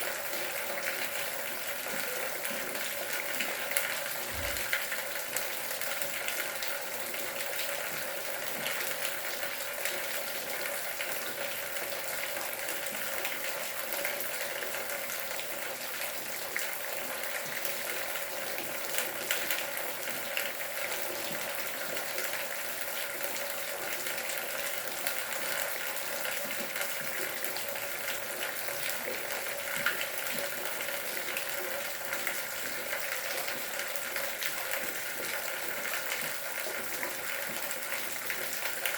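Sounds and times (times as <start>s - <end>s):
steady rain hiss: 3.1s - 7.0s.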